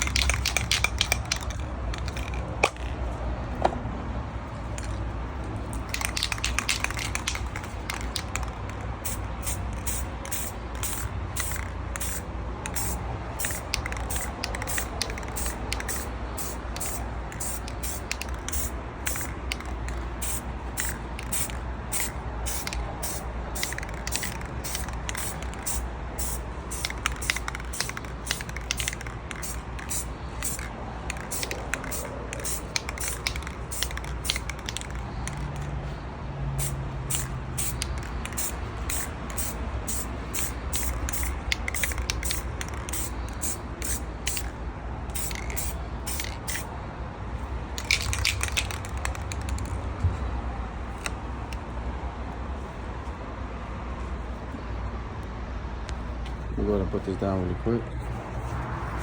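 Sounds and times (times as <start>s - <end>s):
paint spray hissing bursts: 0.0s - 2.3s, 5.7s - 35.6s, 36.6s - 46.7s.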